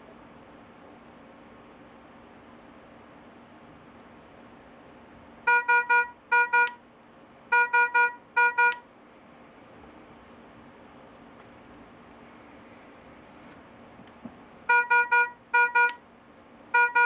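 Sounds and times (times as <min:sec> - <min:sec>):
patient monitor alarm beeps: 0:05.5 - 0:06.8, 0:07.5 - 0:08.8, 0:14.7 - 0:16.0, 0:16.8 - 0:17.0.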